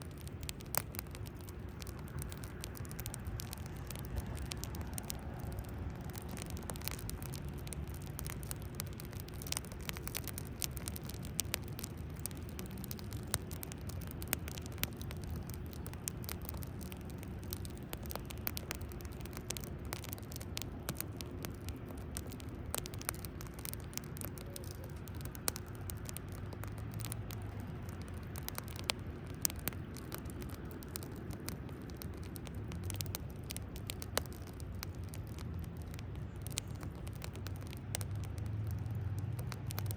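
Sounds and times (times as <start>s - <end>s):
bonfire crackling and popping: 0.0s - 39.9s.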